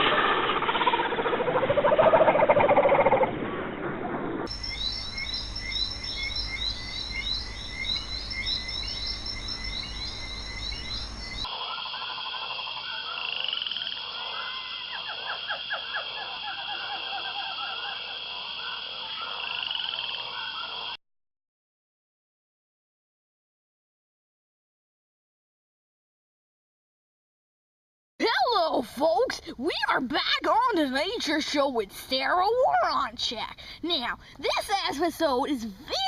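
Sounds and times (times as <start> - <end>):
frogs calling: 4.5 - 21.0
person speaking: 28.2 - 36.0.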